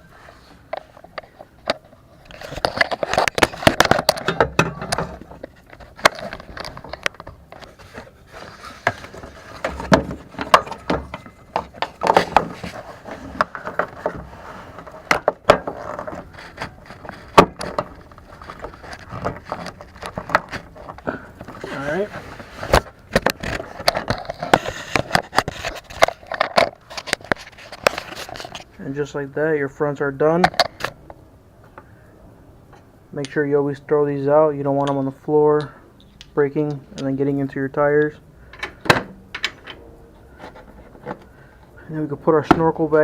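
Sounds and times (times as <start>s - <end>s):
plastic parts clicking and rattling: 0.7s - 28.7s.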